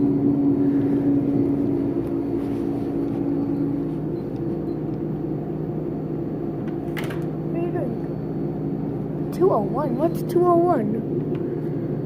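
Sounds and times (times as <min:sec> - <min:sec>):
droning tone: 0:00.0 - 0:12.0
low mechanical hum: 0:00.0 - 0:12.0.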